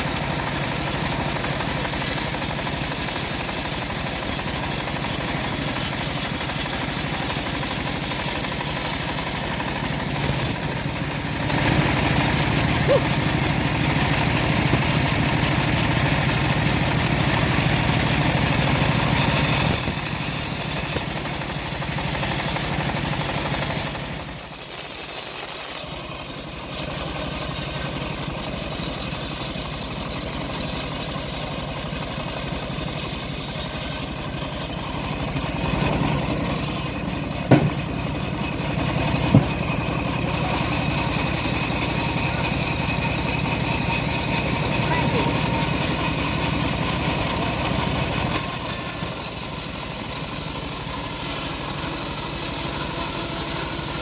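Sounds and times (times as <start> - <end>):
chainsaw running: 0.0 - 54.0
sharp knocks: 37.5 - 37.9, 39.3 - 39.8.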